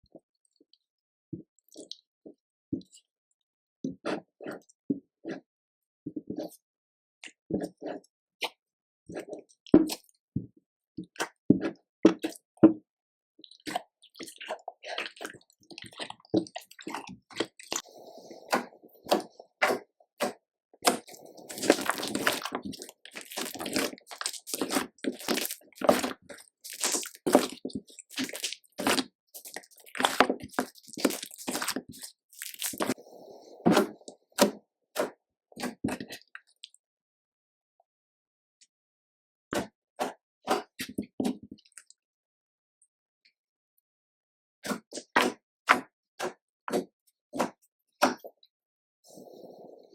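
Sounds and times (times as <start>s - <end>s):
slime squishing: 13.4s - 17.9s, 18.5s - 33.0s.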